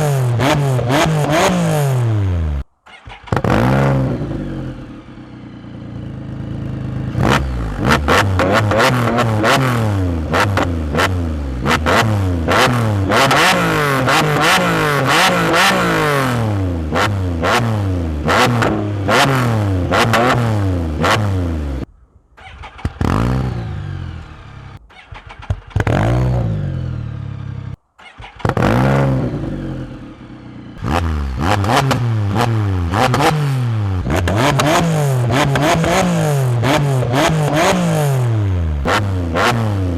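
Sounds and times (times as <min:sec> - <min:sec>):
engine revving in throttle blips: 0:00.0 - 0:05.8, 0:06.4 - 0:21.9, 0:22.7 - 0:39.9
engine starting: 0:02.8 - 0:03.9, 0:22.4 - 0:24.0, 0:24.8 - 0:26.3, 0:28.0 - 0:29.3.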